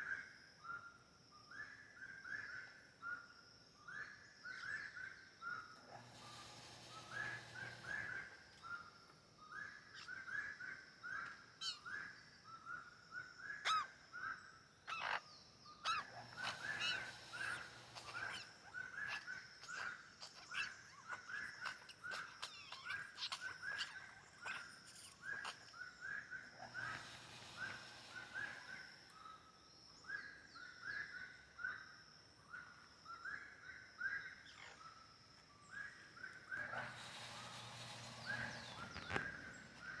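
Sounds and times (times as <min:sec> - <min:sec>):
faint high insect hum: 0:00.0 - 0:40.0
bird chirping call: 0:14.9 - 0:29.4, 0:35.6 - 0:40.0.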